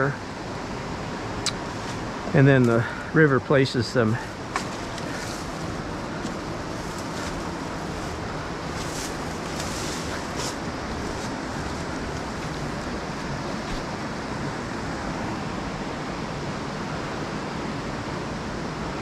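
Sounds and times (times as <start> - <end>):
river rapids rushing: 4.0 - 19.0.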